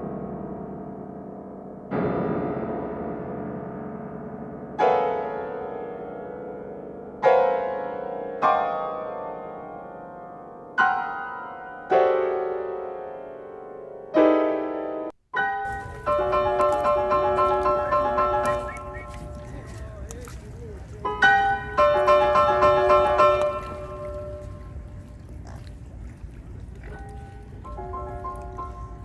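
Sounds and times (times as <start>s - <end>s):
piano chords: 0.0s - 25.2s, 27.0s - 29.0s
fast high piano notes: 15.4s - 19.9s.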